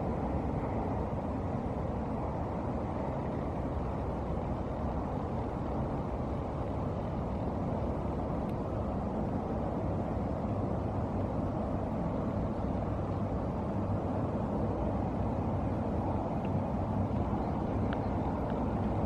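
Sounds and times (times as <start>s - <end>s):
low rumbling outdoor background: 0.0s - 19.0s.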